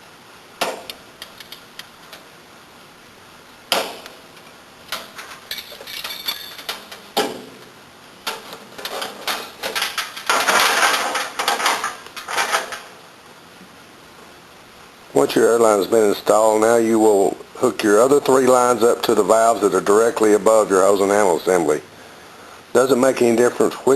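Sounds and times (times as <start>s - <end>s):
metal clicks and clatter: 4.9s - 7.0s, 8.2s - 12.9s.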